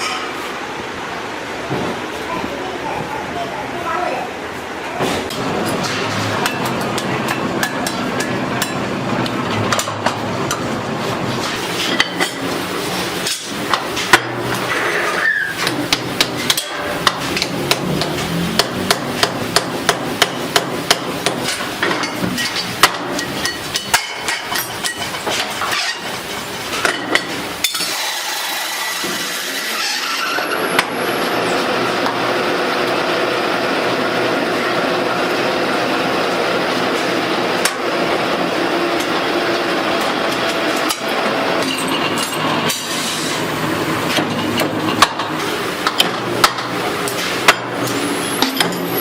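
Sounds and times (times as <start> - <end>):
machine running: 4.4 - 23.5.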